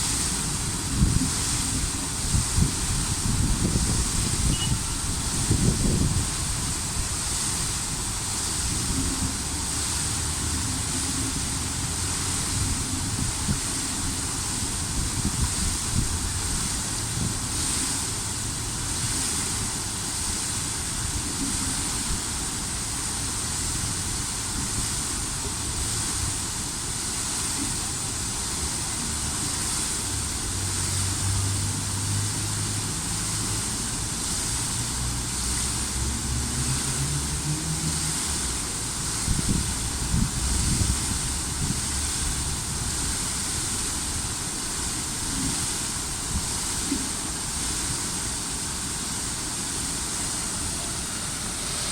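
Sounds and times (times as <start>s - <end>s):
traffic hiss: 0.0s - 51.9s
vehicle engines passing: 30.5s - 39.2s.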